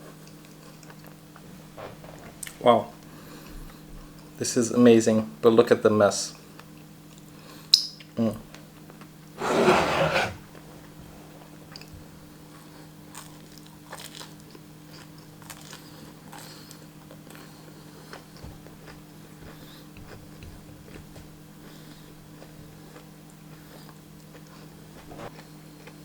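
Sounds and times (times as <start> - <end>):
faint chewing with mouth clicks: 12.5 - 21.0, 21.6 - 26.0.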